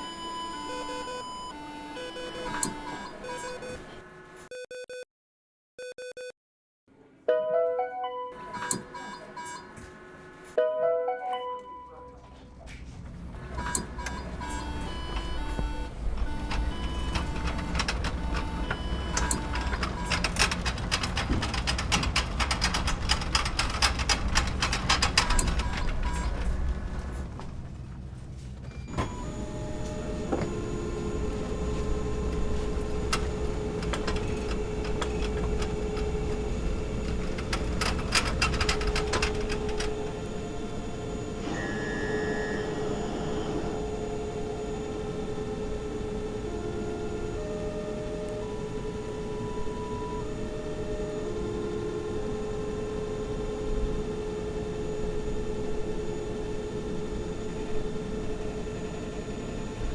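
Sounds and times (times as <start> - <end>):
electronic hum tone: 28.9 - 37.1, 40.0 - 59.9
rapid clicks: 32.3 - 40.2.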